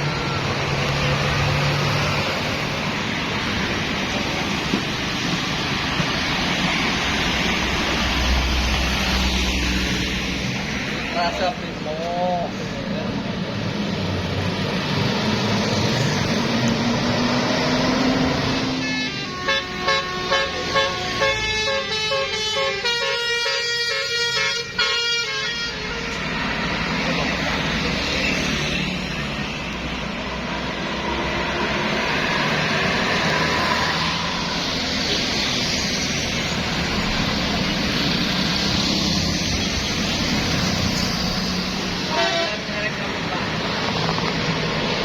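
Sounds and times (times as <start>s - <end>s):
bus engines and traffic: 0.0s - 45.0s
multi-tone bus horn tune: 18.4s - 26.4s, 42.0s - 42.9s.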